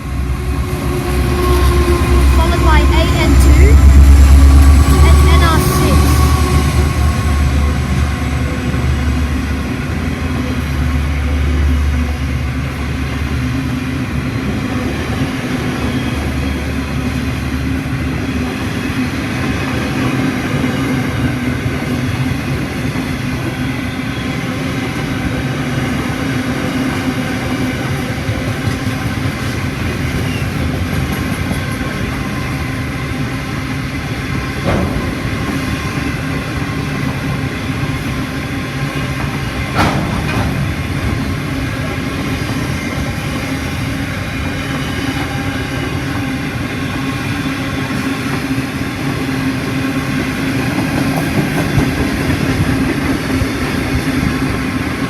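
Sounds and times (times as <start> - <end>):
locomotive diesel drone: 0.0 - 13.4
train wagons rumbling on rails: 0.0 - 55.0.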